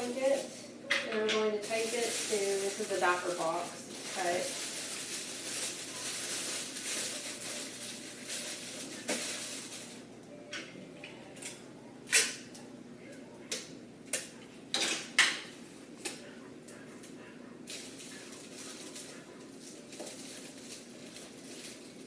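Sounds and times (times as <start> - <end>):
emergency blanket crinkling: 1.6 - 10.0.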